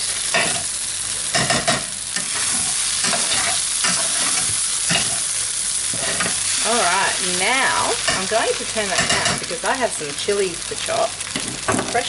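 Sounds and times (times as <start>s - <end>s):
rice sizzling in a frying pan: 0.0s - 12.0s
utensil scraping a pan: 1.4s - 5.3s.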